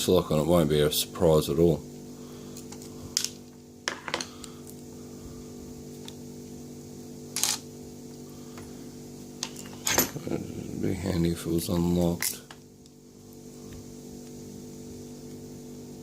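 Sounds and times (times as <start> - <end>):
low electrical hum: 0.0 - 16.0.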